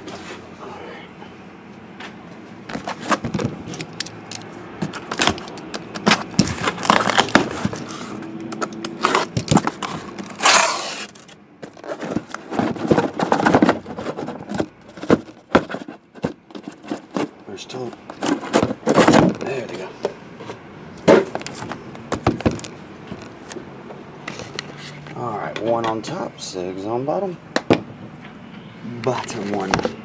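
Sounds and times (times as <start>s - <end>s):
cardboard boxes knocking and scraping: 2.7s - 3.8s, 4.8s - 8.1s, 9.0s - 23.3s.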